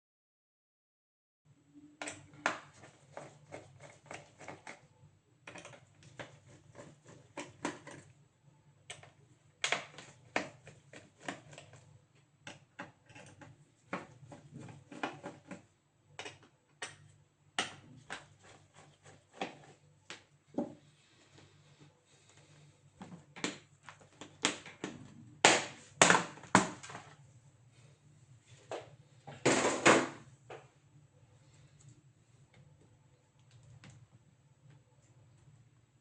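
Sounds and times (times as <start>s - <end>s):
faint low hum: 1.5s - 36.0s.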